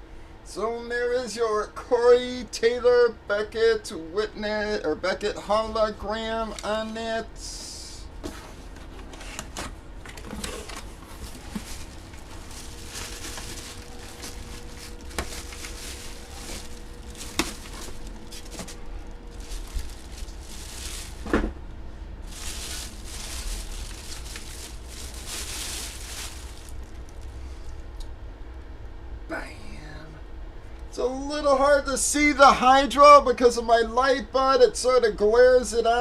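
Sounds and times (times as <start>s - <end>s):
steady low hum: 0.0s - 36.0s
trading cards rustling and sliding: 8.2s - 21.4s, 22.3s - 26.9s.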